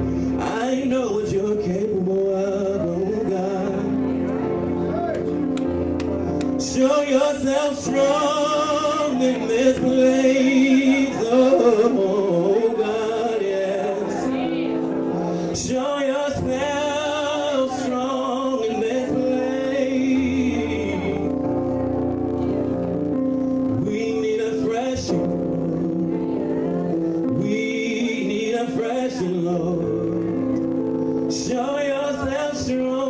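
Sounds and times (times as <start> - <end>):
person singing with vibrato: 0.0 - 33.0
sustained keyboard chords: 0.0 - 33.0.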